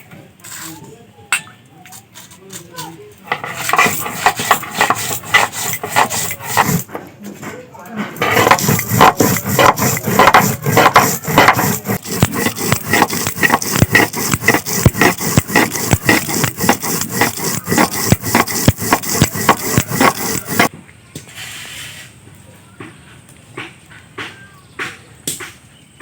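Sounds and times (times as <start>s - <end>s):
stone roller grinding on stone: 3.2s - 7.0s, 8.1s - 20.7s.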